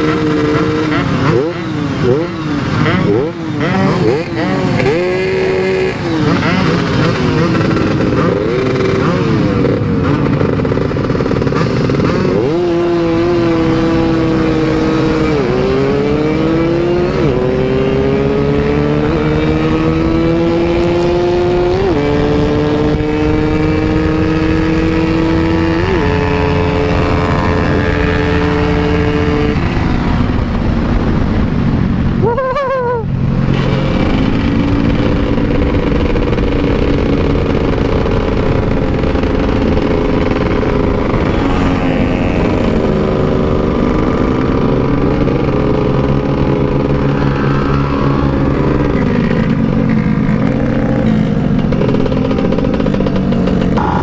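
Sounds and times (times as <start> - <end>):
motorcycle engine under load: 0.0 - 32.2, 33.1 - 54.0
steady rushing noise: 32.9 - 54.0.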